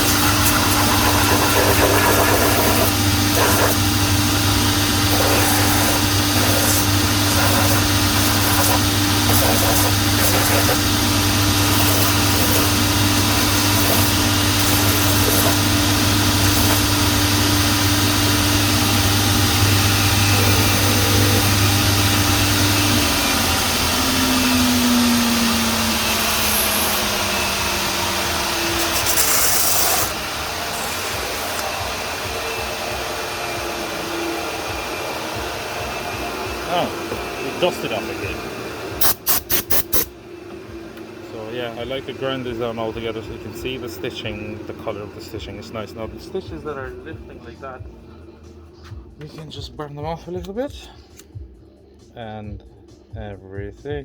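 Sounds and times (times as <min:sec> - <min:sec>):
sole scraping on grinder: 0:00.0 - 0:38.1
grinding machine motor hum: 0:00.0 - 0:39.1, 0:40.1 - 0:48.7
motor spinning down: 0:00.0 - 0:47.3.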